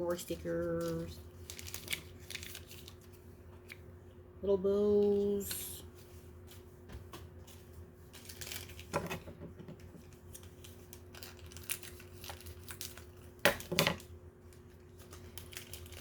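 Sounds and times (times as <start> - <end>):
plastic packaging crinkling: 0.1 - 3.8, 8.1 - 9.1, 10.0 - 16.0.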